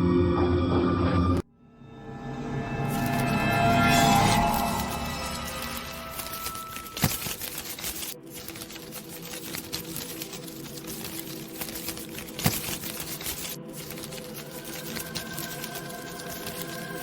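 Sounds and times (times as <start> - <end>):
rapid clicking and crackling: 2.9 - 17.0.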